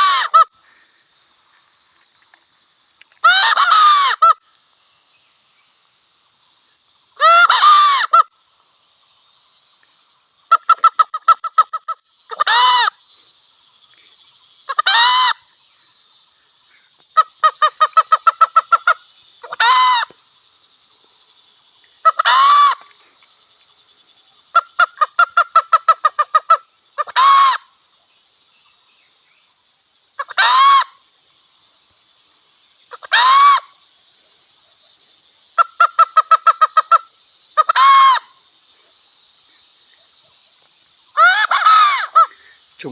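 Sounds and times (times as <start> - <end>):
hen cackling: 0.0 - 0.5, 3.2 - 4.4, 7.2 - 8.3, 10.5 - 13.0, 14.7 - 15.5, 17.2 - 20.2, 22.0 - 22.9, 24.6 - 27.8, 30.2 - 31.1, 32.9 - 33.8, 35.6 - 38.4, 41.2 - 42.9.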